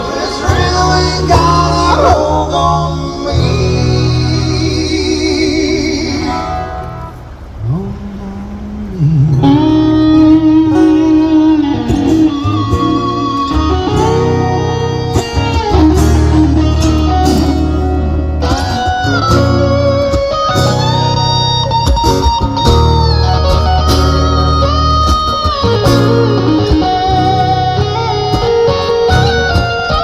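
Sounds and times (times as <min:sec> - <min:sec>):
rock ballad music: 0:00.0 - 0:07.6, 0:09.2 - 0:30.0
electric guitar solo: 0:08.9 - 0:30.0.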